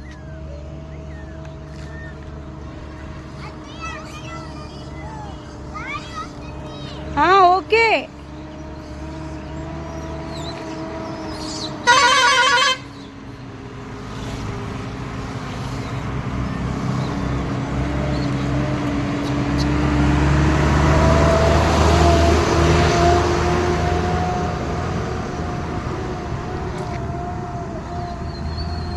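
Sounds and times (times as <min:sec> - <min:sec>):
vehicle engine running: 0:00.0 - 0:28.9
vehicle horn blast: 0:11.8 - 0:13.0.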